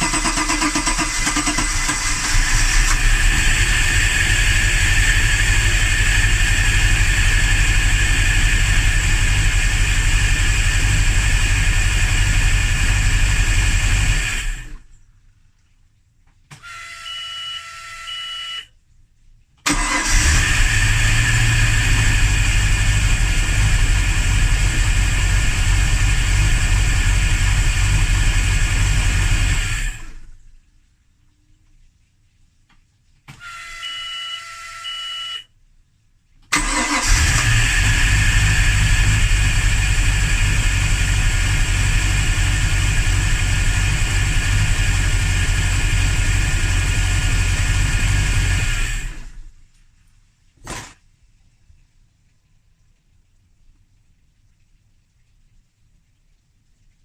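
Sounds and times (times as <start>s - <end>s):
car engine starter cranking: 0.0s - 4.9s, 19.7s - 22.8s, 36.5s - 40.4s.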